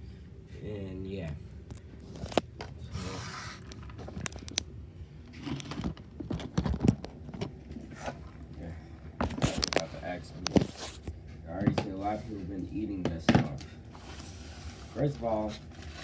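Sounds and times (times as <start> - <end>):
paper packaging crinkling: 2.0 - 4.6, 14.0 - 16.0.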